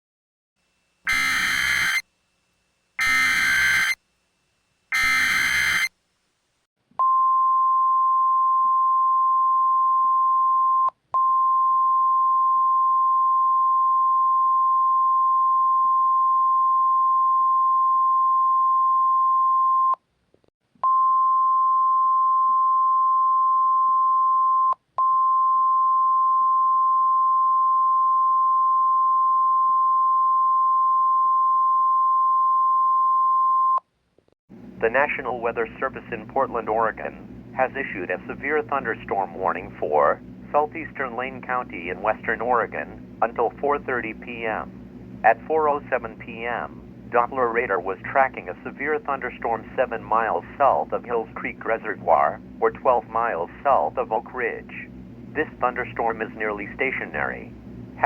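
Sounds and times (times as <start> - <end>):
buzzy data bursts: 1.1 - 2.0, 3.0 - 4.0, 4.9 - 5.9
single-pitch alarm tone: 1.1 - 2.0, 3.0 - 4.0, 4.9 - 5.9, 7.0 - 20.0, 20.9 - 33.1.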